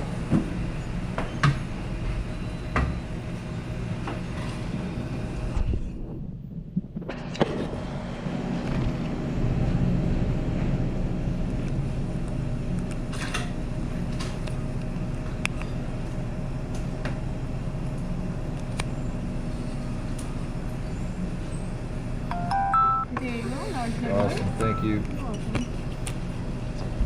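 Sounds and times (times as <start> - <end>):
low mechanical hum: 0.0 - 27.0
faint steady tone: 22.3 - 25.1.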